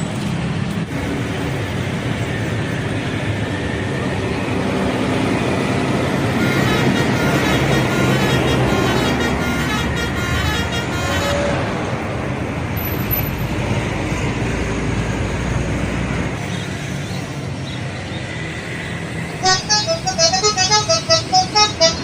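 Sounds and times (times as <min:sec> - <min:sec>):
bus engine: 0:00.0 - 0:22.0
road noise: 0:00.0 - 0:22.0
bus horn playing pulsing notes: 0:06.0 - 0:11.9, 0:19.4 - 0:22.0.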